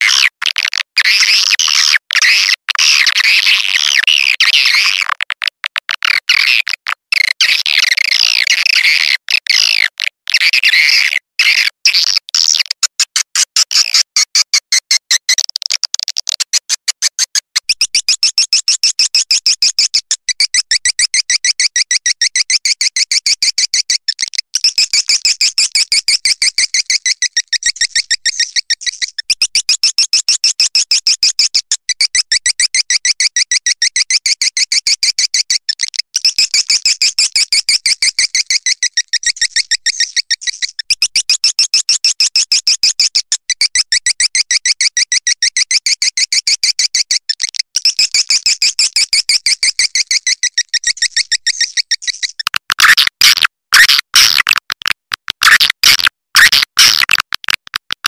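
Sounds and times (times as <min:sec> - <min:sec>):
high chirping twitters: 0:17.7 - 0:30.2, 0:35.9 - 0:41.9, 0:46.9 - 0:54.8.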